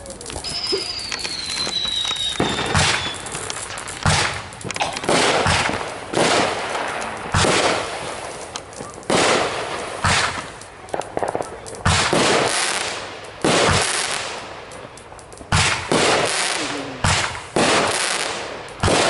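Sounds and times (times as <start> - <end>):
firework whistle: 0.0 - 4.3
fireworks booming: 0.0 - 19.0.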